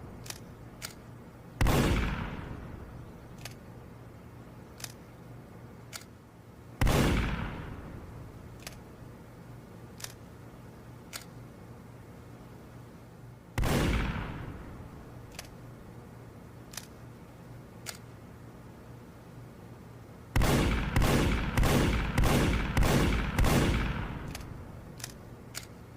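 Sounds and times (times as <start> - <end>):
light mechanical clicks: 0.0 - 1.2, 2.0 - 3.7, 4.7 - 5.2, 5.8 - 6.2, 8.4 - 9.0, 9.9 - 11.5, 14.0 - 15.8, 16.6 - 18.2, 23.8 - 25.9.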